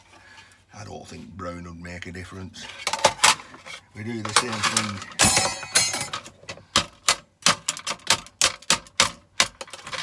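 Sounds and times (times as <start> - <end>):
hammer tapping metal: 5.2 - 6.2.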